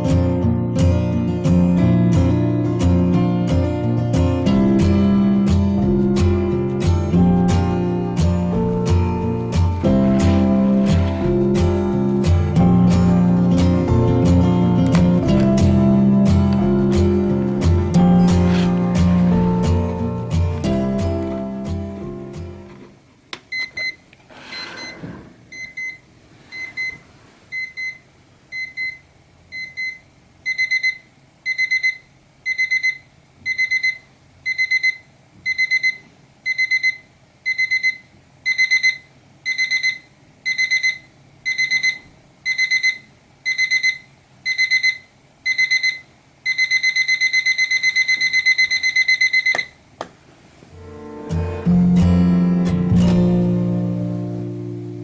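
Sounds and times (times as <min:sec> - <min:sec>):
alarm clock beeping: 0:29.6 - 0:49.6.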